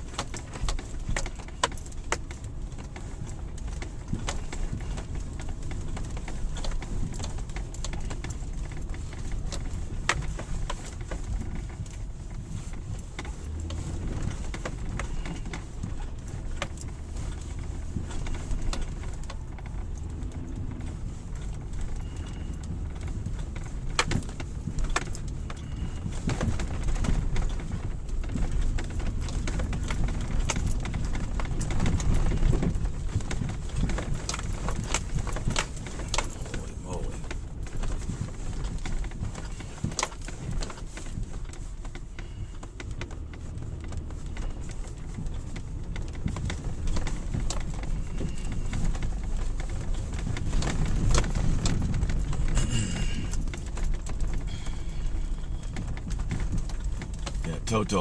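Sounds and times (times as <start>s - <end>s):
engine and tyre rumble: 0.0s - 58.0s.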